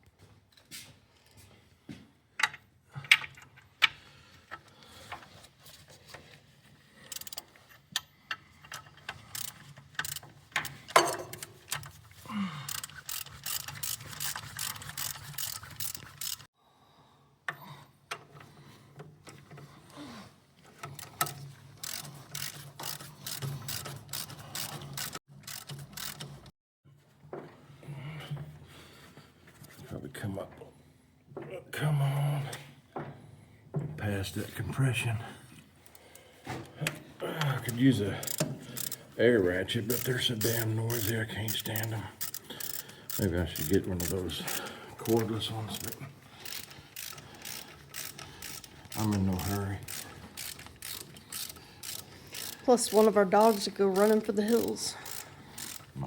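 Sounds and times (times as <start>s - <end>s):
ratchet clicking: 7.0s - 12.0s, 12.7s - 16.5s, 20.8s - 26.5s, 37.6s - 39.1s, 39.8s - 56.0s.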